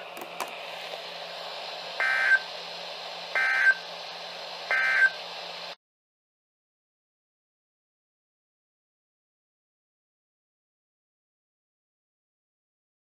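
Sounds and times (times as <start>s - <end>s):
radio hiss: 0.0s - 5.8s.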